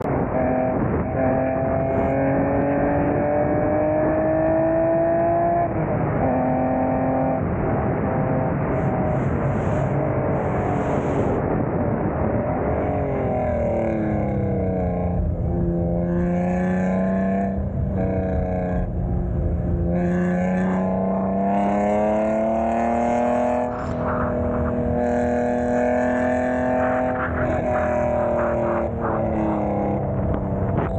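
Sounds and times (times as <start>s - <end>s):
car engine running hard: 17.6s - 30.9s.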